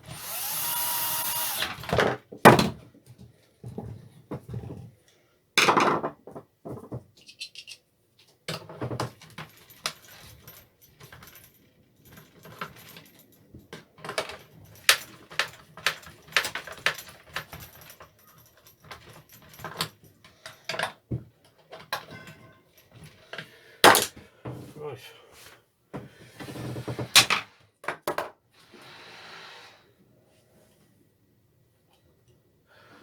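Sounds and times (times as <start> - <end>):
hand tools clinking: 0.0 - 1.9.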